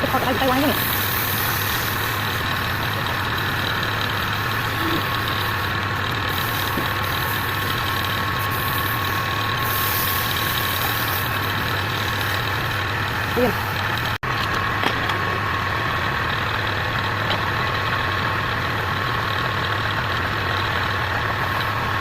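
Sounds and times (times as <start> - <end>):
wood lathe running: 0.0 - 22.0.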